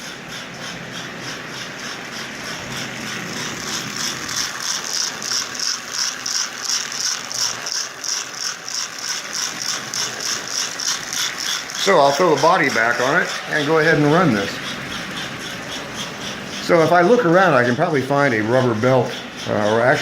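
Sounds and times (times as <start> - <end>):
ball bearings rattling rhythmically: 0.0 - 20.0
rubber band rubbing on rail: 9.1 - 20.0.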